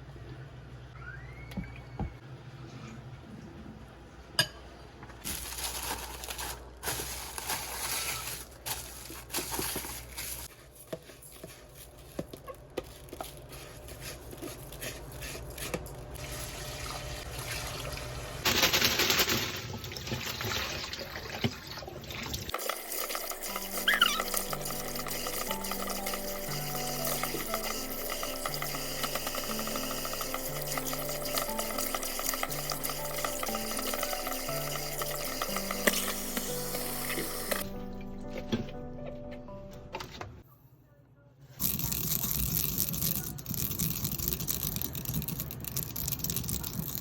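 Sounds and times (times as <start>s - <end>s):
dishes clinking: 4.4s - 4.7s
water running: 16.0s - 38.8s
background music: 22.5s - 40.4s.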